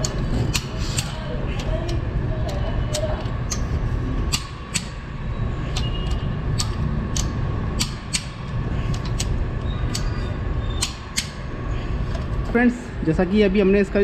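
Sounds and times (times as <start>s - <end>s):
low workshop rumble: 0.0s - 14.0s
torque wrench clicks: 5.7s - 11.4s.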